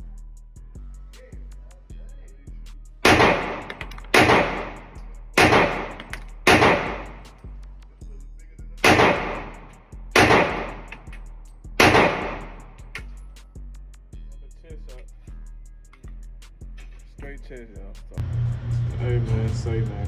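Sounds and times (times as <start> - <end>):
background music with steady beat: 0.0 - 20.0
gunshots with echoing tail: 3.0 - 7.4, 8.8 - 11.1, 11.8 - 12.8.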